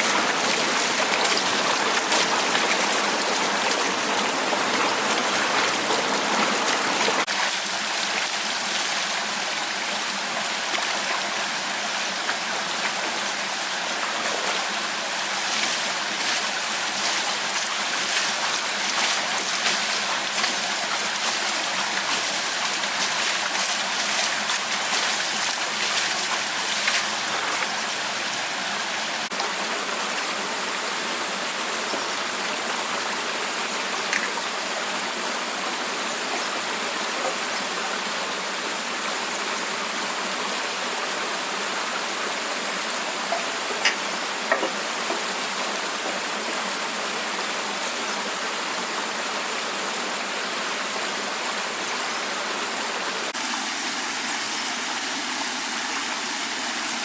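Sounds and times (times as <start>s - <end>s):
small water splashes: 0.0s - 30.4s
flowing water rushing: 0.0s - 57.0s.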